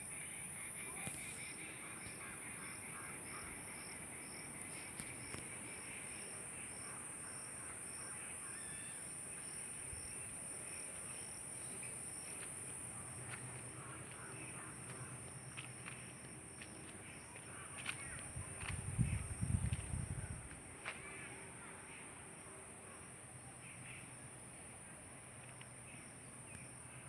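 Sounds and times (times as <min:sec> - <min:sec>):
insects buzzing drone: 0:00.0 - 0:27.0.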